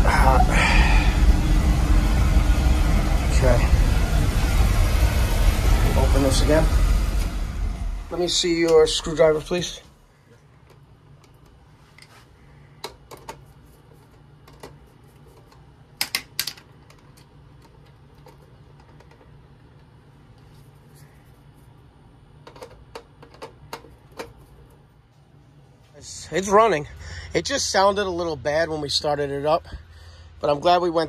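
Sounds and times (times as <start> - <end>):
boiler burner low rumble: 0.0 - 11.6, 24.6 - 31.0.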